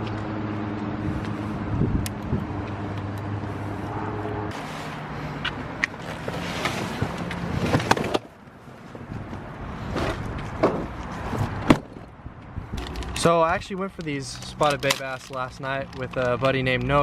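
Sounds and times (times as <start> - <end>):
vehicle engine humming: 0.0 - 17.0.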